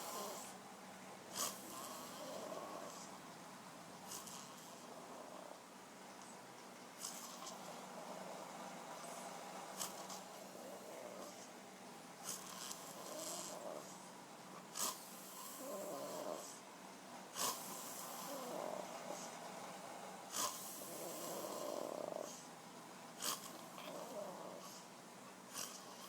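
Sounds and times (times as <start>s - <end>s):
man snoring heavily: 0.0s - 0.5s, 1.4s - 3.1s, 12.4s - 13.9s, 14.8s - 16.6s, 17.4s - 19.3s, 20.3s - 22.4s, 23.2s - 24.7s.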